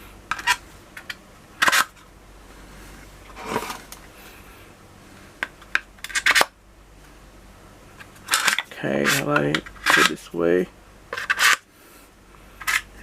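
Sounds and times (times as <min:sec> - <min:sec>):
handling scrape: 0:02.7 - 0:04.0, 0:08.2 - 0:10.2, 0:11.1 - 0:11.7, 0:12.6 - 0:13.0.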